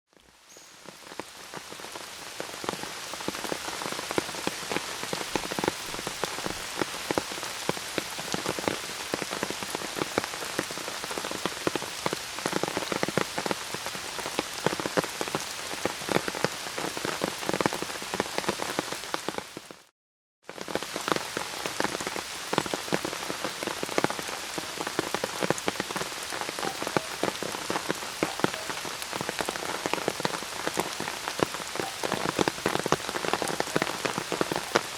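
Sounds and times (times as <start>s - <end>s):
steady rain falling: 0.1s - 19.9s, 20.5s - 34.9s.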